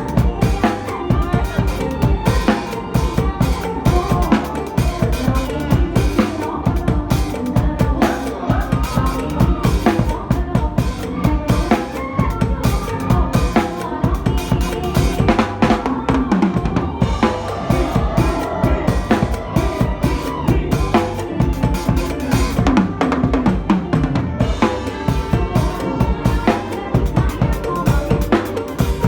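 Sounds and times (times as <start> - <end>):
drum kit fast beat: 0.0 - 29.0
music with melodic lines: 0.0 - 29.0.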